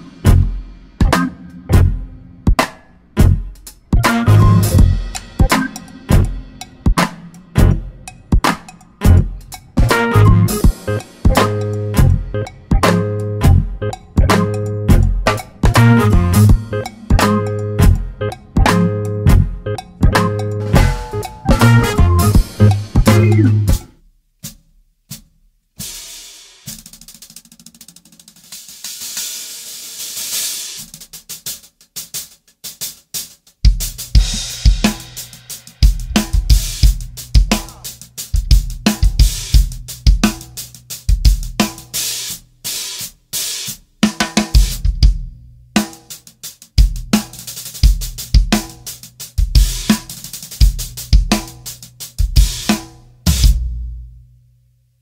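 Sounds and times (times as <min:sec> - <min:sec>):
bass drum: 0:00.0 - 0:25.4, 0:33.7 - 0:42.0, 0:44.0 - 0:46.1, 0:46.8 - 0:54.4
snare drum: 0:02.5 - 0:07.8, 0:08.4 - 0:12.0, 0:14.2 - 0:14.6, 0:15.3 - 0:17.6, 0:20.0 - 0:45.2, 0:45.8 - 0:53.8
washy hi-hat cymbal: 0:04.6 - 0:13.3, 0:13.9 - 0:18.4, 0:20.2 - 0:25.2, 0:25.8 - 0:54.0.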